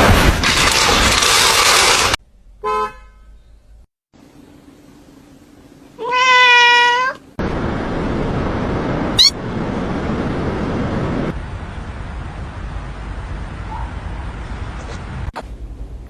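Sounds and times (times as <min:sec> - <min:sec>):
cat meowing: 0:06.0 - 0:07.2, 0:09.2 - 0:09.4.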